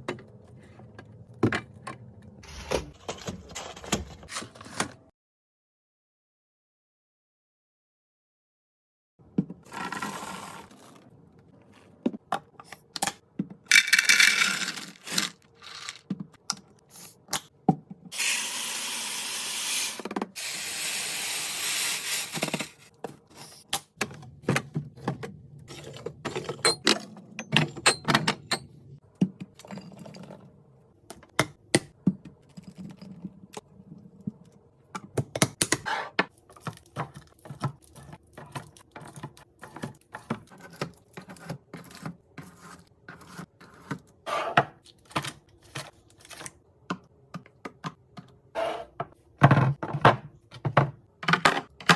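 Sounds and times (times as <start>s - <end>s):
items tapped and set down: 22.4s - 30.0s, 49.0s - 51.9s.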